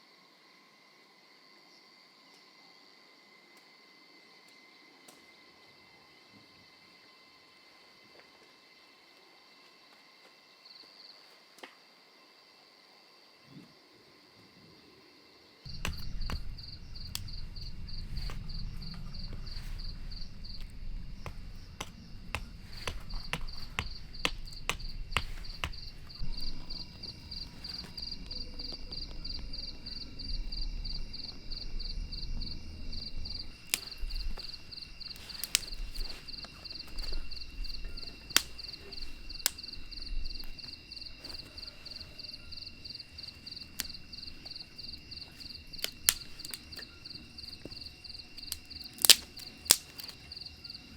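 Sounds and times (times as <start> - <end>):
crickets chirping: 0.0 - 50.9
sharp knocks and clicks: 15.7 - 26.2
low rumble: 15.7 - 36.2
insect trilling: 15.7 - 50.9.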